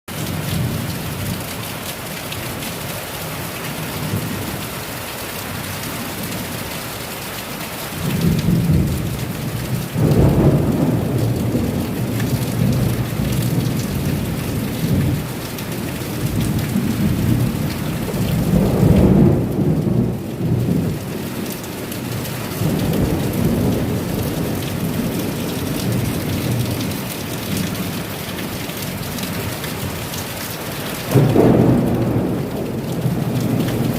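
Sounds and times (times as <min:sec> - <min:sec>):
heavy rain falling: 0:00.1 - 0:33.9
thunder rumbling: 0:08.1 - 0:30.0, 0:31.0 - 0:33.9.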